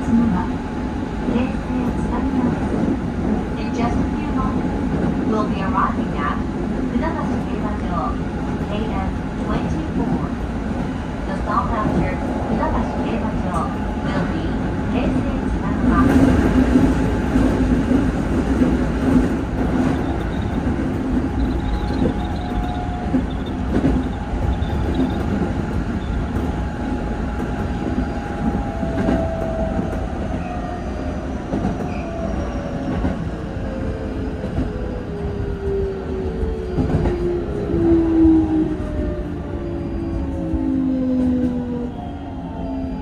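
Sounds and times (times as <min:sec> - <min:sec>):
train running noise: 0:00.0 - 0:43.0
train motor whine: 0:19.9 - 0:26.2.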